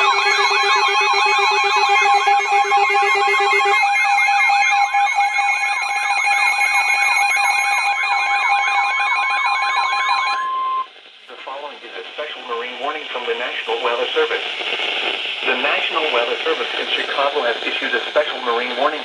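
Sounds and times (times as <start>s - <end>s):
warbling alarm tone: 0.0s - 10.9s.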